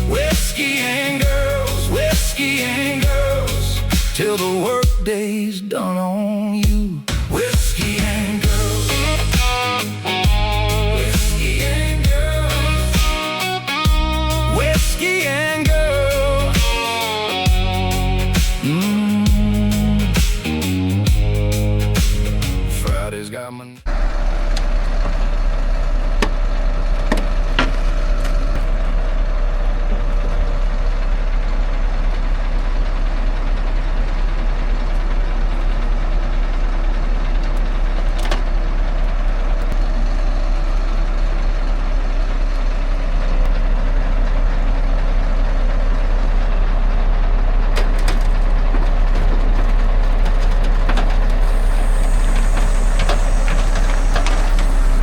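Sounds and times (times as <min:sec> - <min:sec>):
diesel machinery running: 0:00.0 - 0:05.1, 0:07.0 - 0:23.2, 0:23.9 - 0:55.0
metallic knocks and clanks: 0:27.0 - 0:28.7, 0:47.8 - 0:55.0
air hissing: 0:47.8 - 0:55.0.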